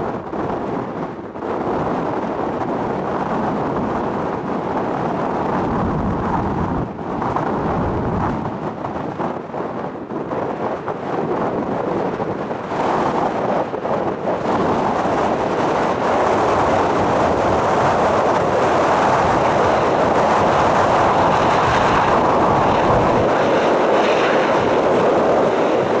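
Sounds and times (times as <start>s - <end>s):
jet engines roaring: 14.6s - 26.0s.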